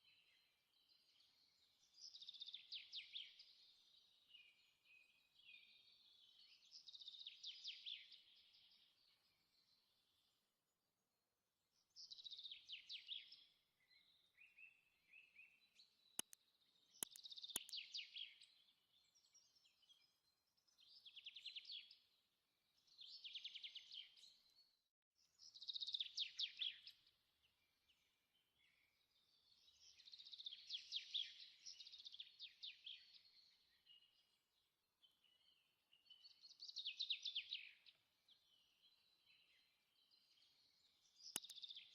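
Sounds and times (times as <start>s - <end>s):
sharp clicks: 16.2s - 16.4s, 17.0s - 17.8s, 41.4s - 41.6s.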